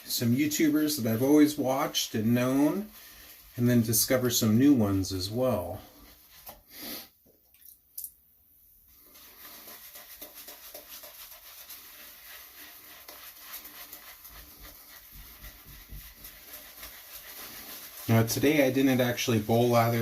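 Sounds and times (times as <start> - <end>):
shaving brush swishing lather: 0.0 - 6.7, 8.9 - 20.0.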